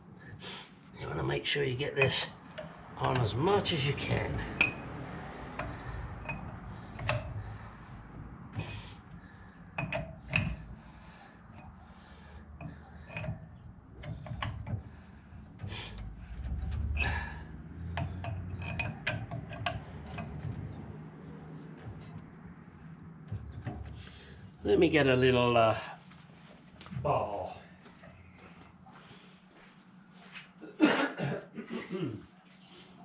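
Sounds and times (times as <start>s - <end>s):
steel parts clinking: 4.3s - 4.8s, 9.7s - 10.8s, 17.9s - 20.5s.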